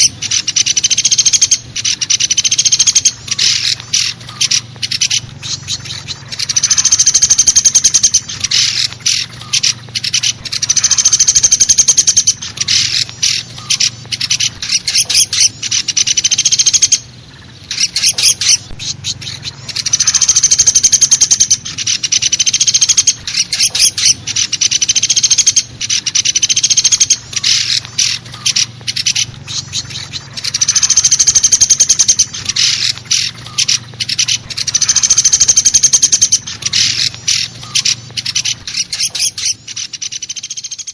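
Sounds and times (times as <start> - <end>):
woodpecker rattling trills: 0.0 - 40.9.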